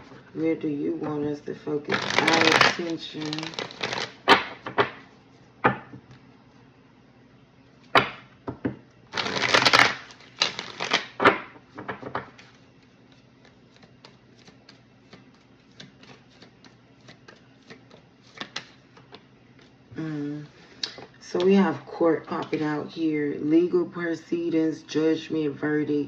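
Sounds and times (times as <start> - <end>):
cards being shuffled: 0.0 - 5.0, 9.1 - 19.8
light ticking of cards: 13.1 - 19.7.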